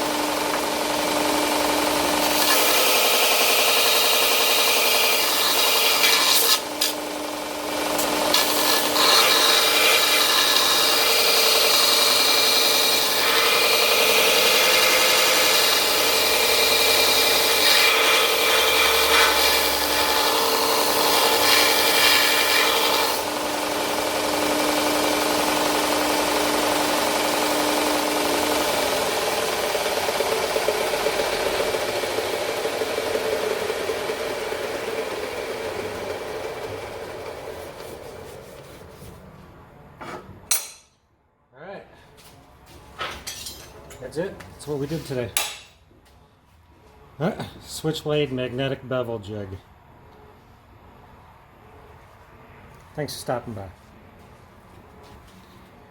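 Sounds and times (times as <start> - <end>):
belt grinder running: 0.0 - 38.2.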